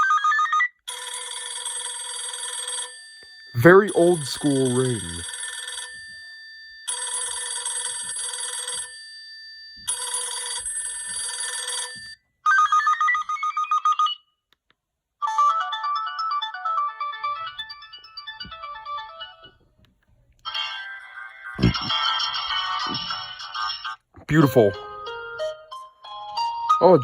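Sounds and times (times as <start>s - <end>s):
old-school telephone ring: 0.0s - 14.2s.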